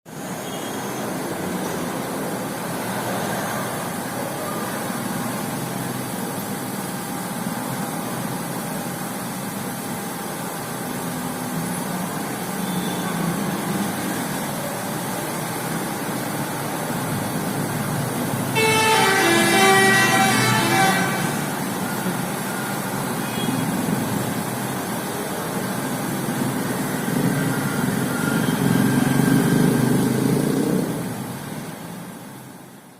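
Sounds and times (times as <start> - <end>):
musical multi-tone horn: 18.4 - 22.3.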